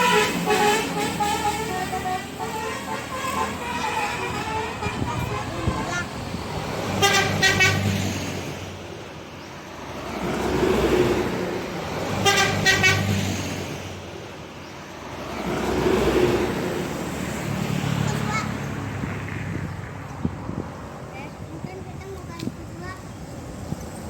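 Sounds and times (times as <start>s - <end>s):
bus multi-tone horn: 0.0s - 6.3s, 6.9s - 8.0s, 12.2s - 13.2s
passing vehicles: 0.0s - 24.0s.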